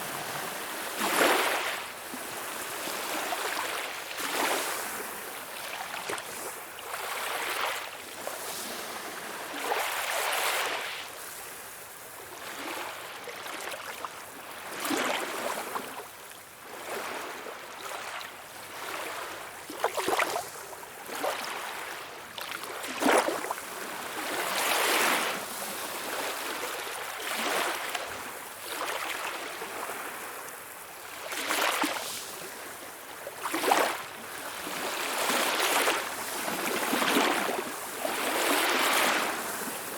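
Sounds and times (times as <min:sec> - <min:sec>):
small waves splashing: 0:00.0 - 0:11.1, 0:16.7 - 0:39.9.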